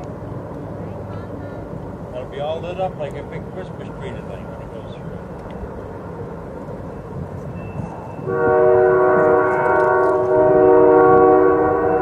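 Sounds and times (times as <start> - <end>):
freight locomotive rumbling: 0.0 - 12.0
locomotive air horn chord: 8.2 - 12.0.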